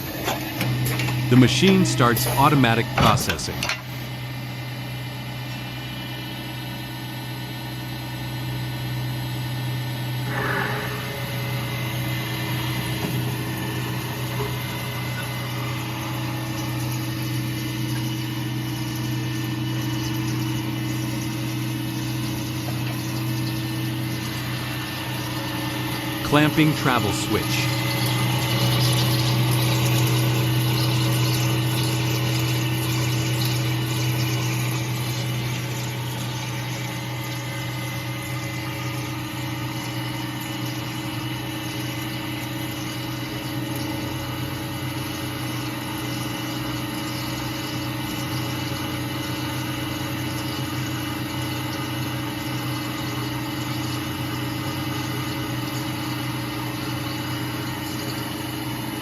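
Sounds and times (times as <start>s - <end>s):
drilling machine humming: 10.0s - 40.8s.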